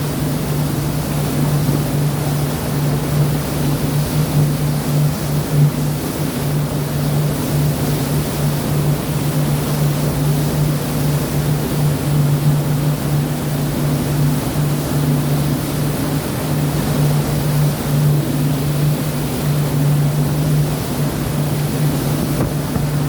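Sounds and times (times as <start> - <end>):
sea water rushing: 0.0 - 23.0
steady low hum: 0.0 - 23.0.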